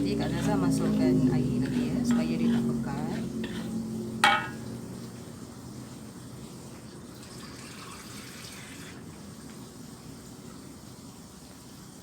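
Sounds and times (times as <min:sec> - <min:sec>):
water splashing into a pot: 0:04.2 - 0:04.8, 0:06.9 - 0:09.1.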